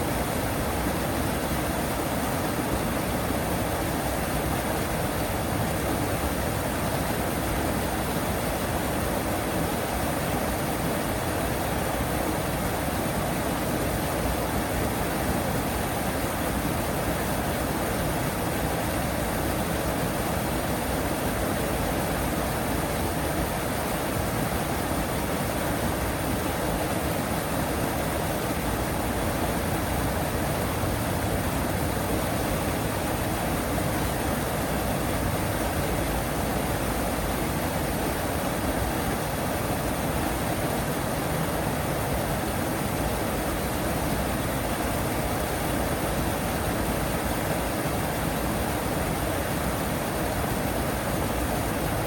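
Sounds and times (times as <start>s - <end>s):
flowing water rushing: 0.0s - 52.0s.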